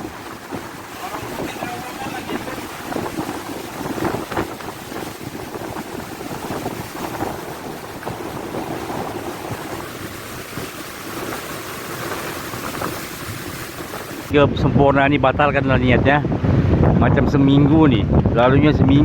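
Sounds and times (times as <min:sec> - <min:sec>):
gusty wind buffeting microphone: 0:00.0 - 0:19.0.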